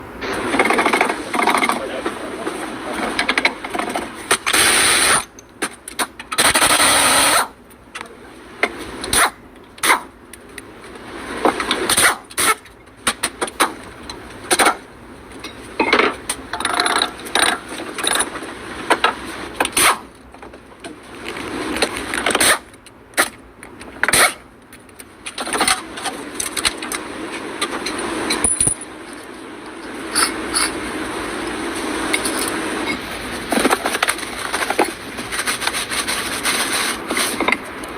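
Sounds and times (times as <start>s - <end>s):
power tool bursts: 4.3s - 5.4s, 6.3s - 7.6s
metal clanks and scrapes: 27.6s - 30.8s, 32.1s - 37.7s.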